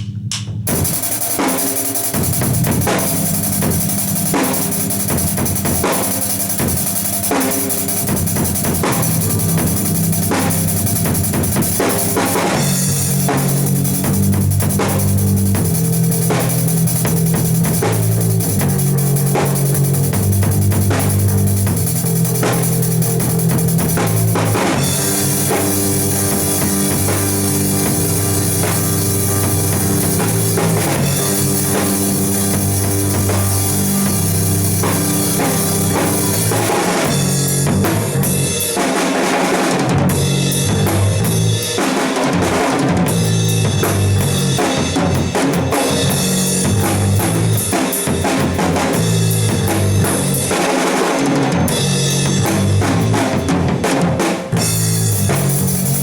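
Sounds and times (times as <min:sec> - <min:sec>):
drum kit beat: 0:00.0 - 0:56.0
low bass line: 0:08.0 - 0:38.4.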